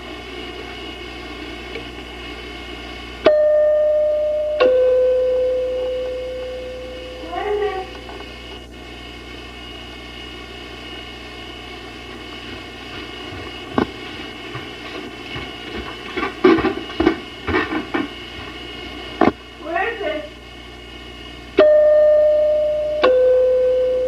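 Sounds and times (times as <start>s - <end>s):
steady background hum: 0.0s - 24.0s
thumps: 12.5s - 18.6s.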